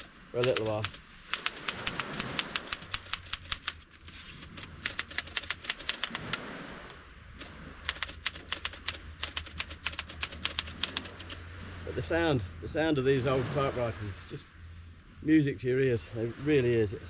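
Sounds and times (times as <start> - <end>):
typewriter key clacks: 0.0 - 6.4, 7.9 - 11.4.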